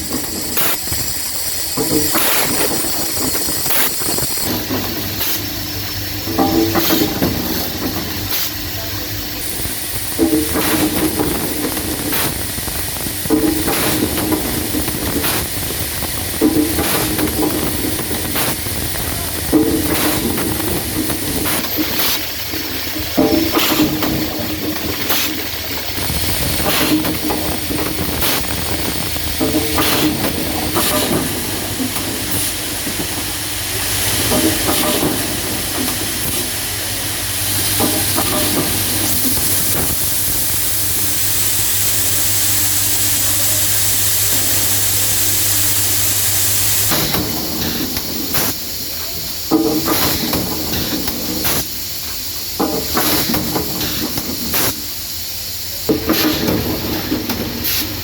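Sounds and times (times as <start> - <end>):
clicks and knocks of actuators: 0.0 - 58.0
low machine hum: 0.0 - 58.0
hiss of air: 49.8 - 58.0.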